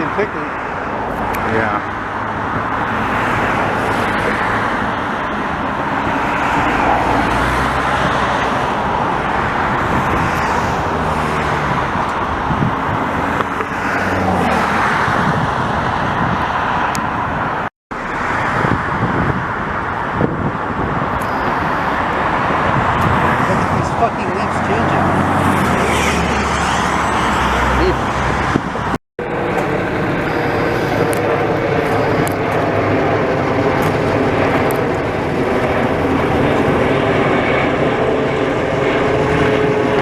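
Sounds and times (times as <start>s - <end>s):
highway traffic: 0.0s - 40.0s.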